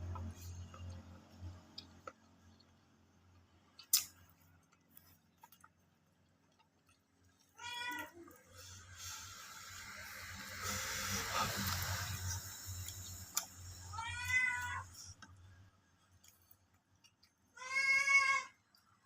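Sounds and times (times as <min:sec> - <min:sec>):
cat meowing: 0:07.5 - 0:08.5, 0:13.8 - 0:15.1, 0:17.6 - 0:18.6.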